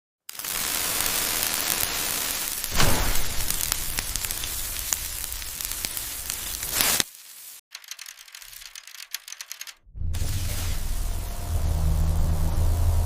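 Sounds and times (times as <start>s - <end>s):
dense hissing crackling noise: 0.3s - 7.6s
faint scattered crackles: 0.3s - 9.8s.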